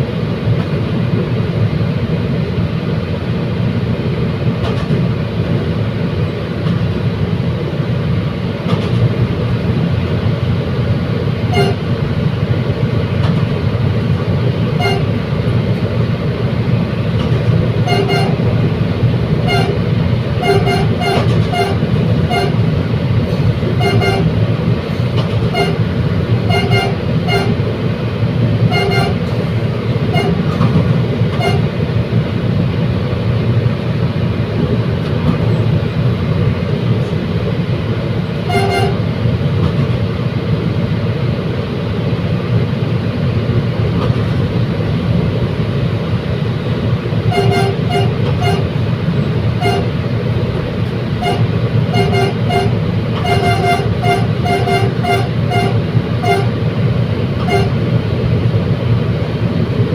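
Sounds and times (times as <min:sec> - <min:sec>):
train rumbling: 0:00.0 - 0:59.9
train horn toots: 0:11.5 - 0:11.9, 0:14.8 - 0:15.2, 0:17.8 - 0:18.4, 0:19.4 - 0:19.8, 0:20.4 - 0:22.7, 0:23.8 - 0:24.4, 0:25.4 - 0:25.9, 0:26.5 - 0:27.6, 0:28.7 - 0:29.3, 0:30.1 - 0:30.5, 0:31.3 - 0:31.7, 0:38.4 - 0:39.1, 0:47.3 - 0:48.7, 0:49.6 - 0:50.0, 0:51.2 - 0:56.6, 0:57.4 - 0:57.8.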